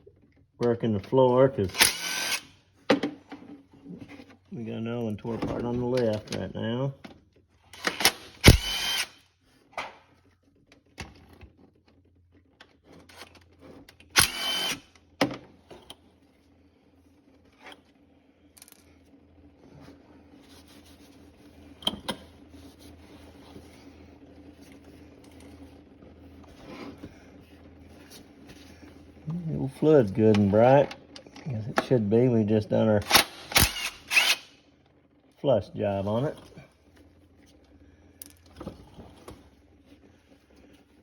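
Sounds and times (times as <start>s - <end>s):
cordless power tool whining: 1.7s - 2.5s, 7.8s - 9.2s, 14.2s - 14.9s, 33.1s - 34.6s.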